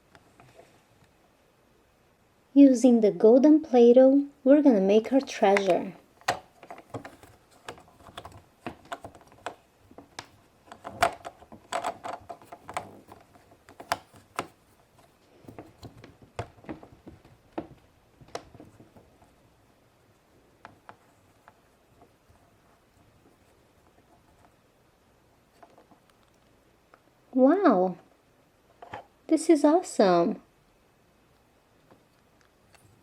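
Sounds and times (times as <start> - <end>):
plastic molds clicking and tapping: 5.4 - 19.4.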